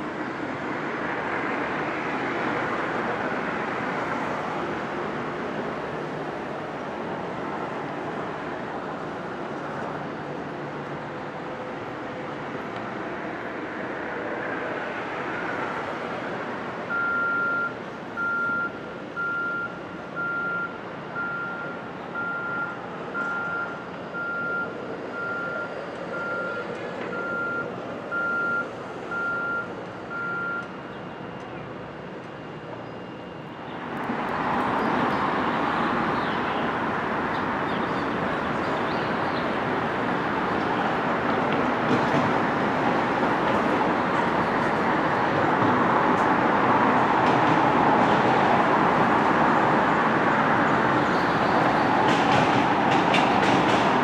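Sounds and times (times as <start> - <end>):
site machinery noise: 0.0 - 54.0
reversing alarm beeping: 16.9 - 31.4.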